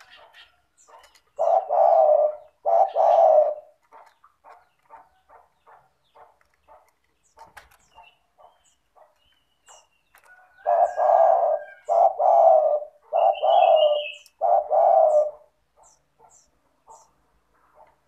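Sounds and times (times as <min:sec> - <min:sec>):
dove cooing: 0:00.0 - 0:06.8, 0:09.7 - 0:17.2
small birds chirping: 0:00.0 - 0:18.0.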